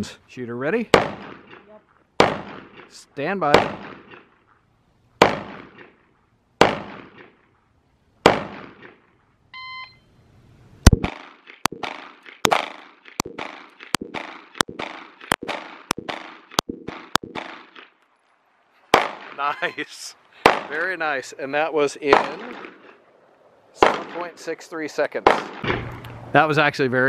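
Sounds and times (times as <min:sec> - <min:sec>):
pistol gunshots: 0:00.9 - 0:04.4, 0:05.2 - 0:07.6, 0:08.2 - 0:09.2, 0:10.8 - 0:18.0, 0:18.9 - 0:19.5, 0:20.4 - 0:20.8, 0:22.0 - 0:23.0, 0:23.8 - 0:24.5, 0:25.2 - 0:26.1
shot timer beep: 0:09.6 - 0:10.1.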